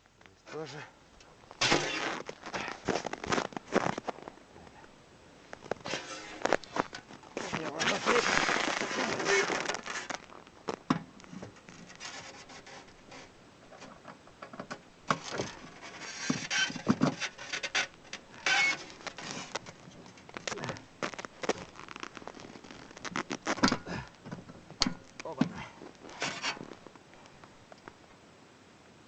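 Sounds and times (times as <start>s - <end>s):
tools scraping on snowmobile: 1.6s - 4.1s, 5.8s - 10.2s, 11.4s - 14.0s, 15.1s - 20.0s, 26.0s - 26.7s.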